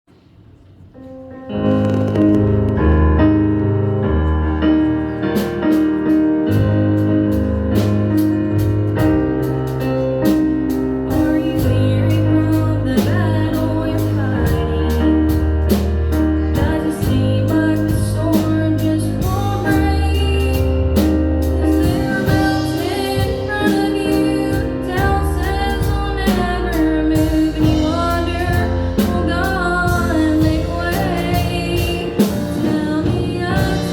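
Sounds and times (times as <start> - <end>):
drums: 0.1 - 33.9
keyboard chords: 1.0 - 33.9
bass: 1.4 - 33.9
person singing: 16.5 - 33.9.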